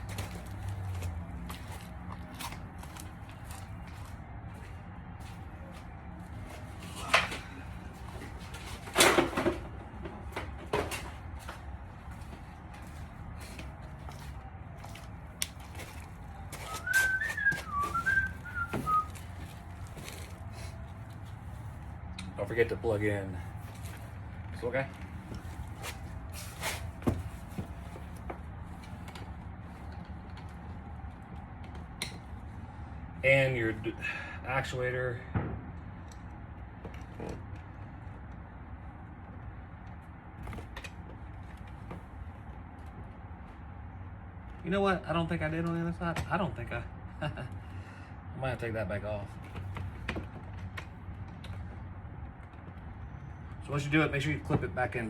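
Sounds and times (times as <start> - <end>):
knocks and clatters of handling: 6.6 - 12.8.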